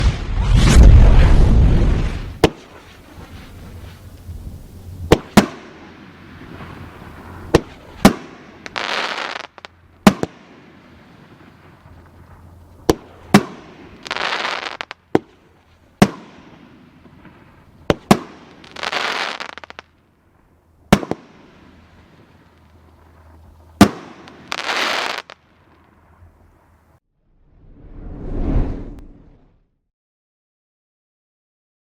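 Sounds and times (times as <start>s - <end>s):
firework shots bursting: 0.0s - 10.9s, 11.8s - 15.4s, 16.0s - 17.3s, 17.9s - 19.8s, 20.9s - 21.8s, 23.0s - 25.4s
crackling glitter hiss: 1.9s - 16.0s.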